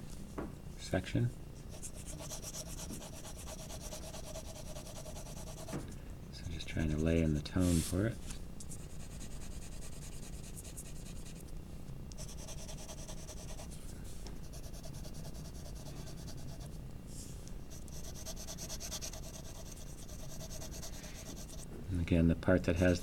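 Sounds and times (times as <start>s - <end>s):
pencil shading on paper: 1.7s - 5.8s, 12.2s - 13.7s, 14.5s - 16.7s, 17.7s - 21.6s.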